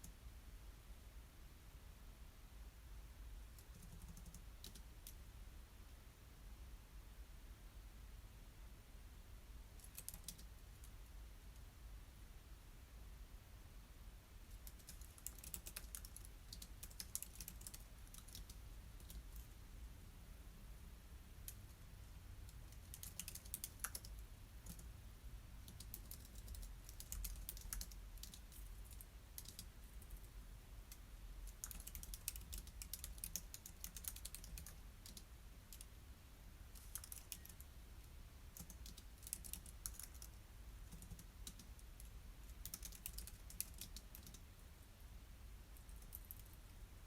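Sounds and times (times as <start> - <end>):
low steady hum: 0.0 - 47.0
typing on computer keyboard: 3.6 - 5.2, 9.8 - 10.9, 14.5 - 19.5, 22.5 - 24.9, 25.6 - 30.2, 31.5 - 35.9, 36.8 - 37.6, 38.6 - 44.4.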